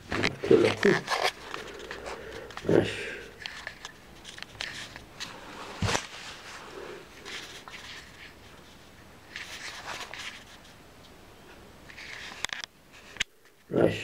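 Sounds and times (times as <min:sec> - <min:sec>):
light clicks and rustling: 0:03.3 - 0:06.2, 0:11.9 - 0:13.7.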